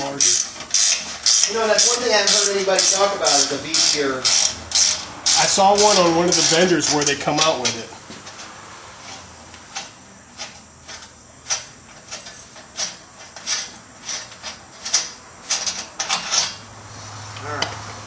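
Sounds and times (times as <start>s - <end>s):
ratchet wrench clicking: 0.2s - 7.8s.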